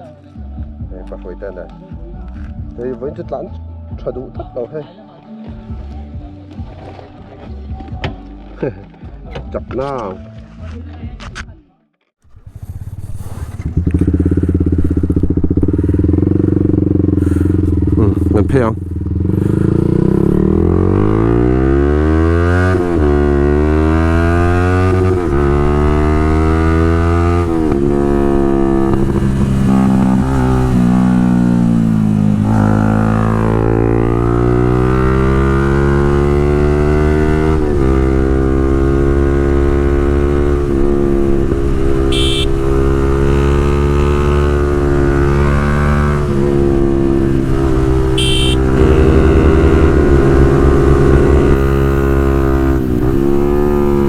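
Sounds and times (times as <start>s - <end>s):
motorcycle accelerating: 12.2s - 54.0s.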